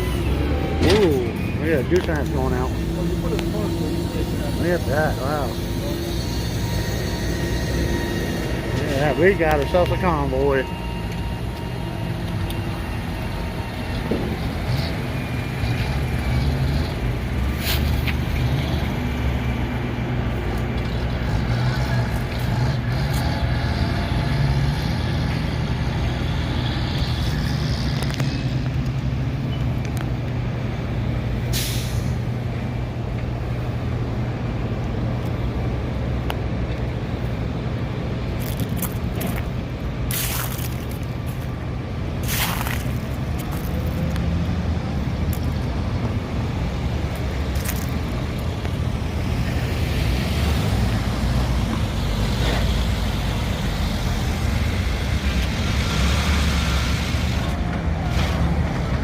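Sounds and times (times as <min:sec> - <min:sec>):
truck diesel engines running: 0:00.0 - 0:59.0
air brake hisses: 0:31.5 - 0:32.2.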